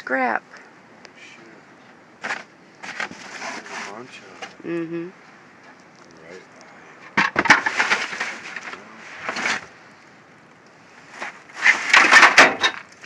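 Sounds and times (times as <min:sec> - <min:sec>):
scrap metal clattering and scraping: 0:07.0 - 0:09.8, 0:11.1 - 0:12.9.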